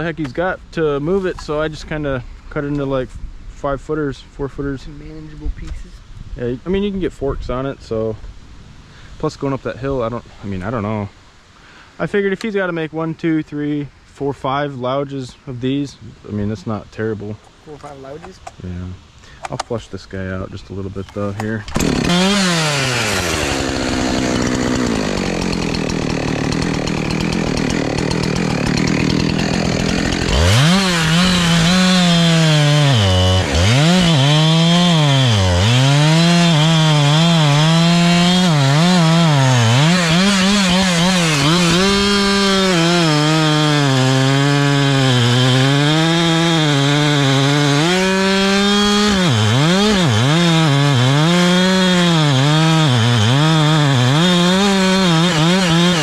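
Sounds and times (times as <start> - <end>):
chainsaw cutting wood: 21.6 - 56.0.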